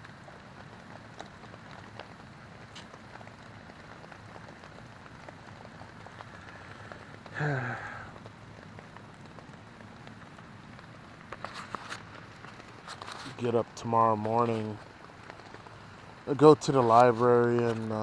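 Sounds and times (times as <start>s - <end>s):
rain falling on a tent: 0.0s - 18.0s
low voice hum: 7.3s - 8.2s.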